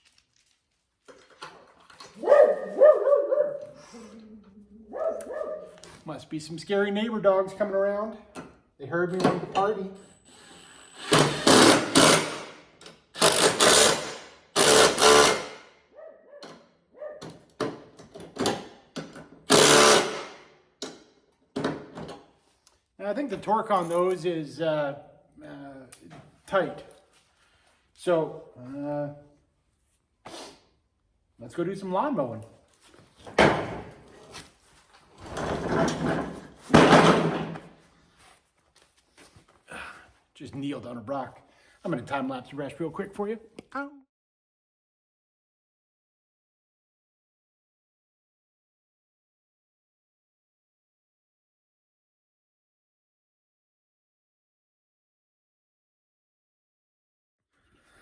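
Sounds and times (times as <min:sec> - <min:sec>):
impact wrench bursts: 0:10.2 - 0:15.6, 0:19.5 - 0:20.4
clunk and scrape: 0:32.9 - 0:39.5.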